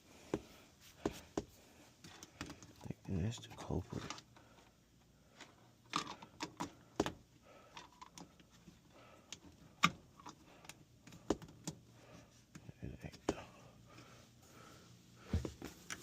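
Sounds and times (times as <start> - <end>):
clicks and knocks of objects handled: 0.4 - 2.9, 3.5 - 11.8.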